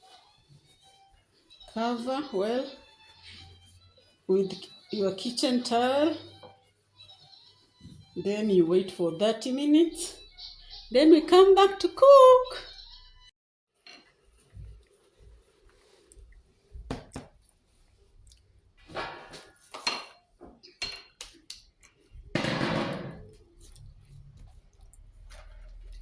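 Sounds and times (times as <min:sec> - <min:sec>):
dishes and utensils clinking: 0:13.8 - 0:14.2, 0:18.9 - 0:21.3
rustling noise: 0:14.1 - 0:19.8.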